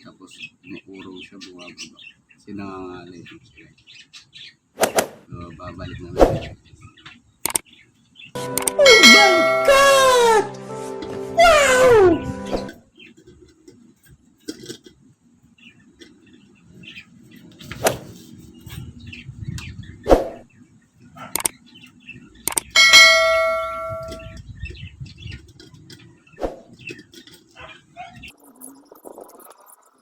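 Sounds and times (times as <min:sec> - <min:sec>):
metallic clang ringing: 0:22.7 - 0:24.4.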